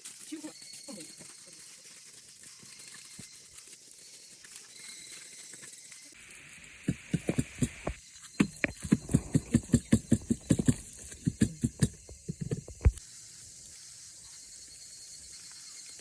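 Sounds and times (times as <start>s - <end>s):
quick dull thumps: 6.6s - 13.0s.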